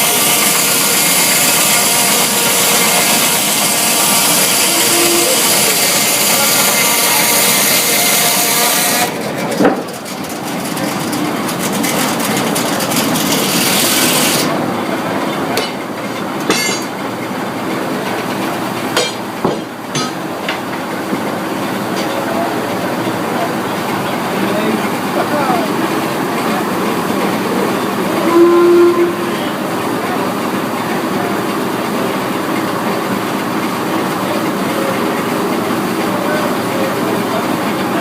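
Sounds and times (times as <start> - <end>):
loud high-pitched noise: 0.0 - 9.2, 28.1 - 30.2
sawmill machinery running: 0.0 - 38.0
sharp knocks and clanks: 9.5 - 12.2, 15.4 - 17.2, 18.9 - 21.3.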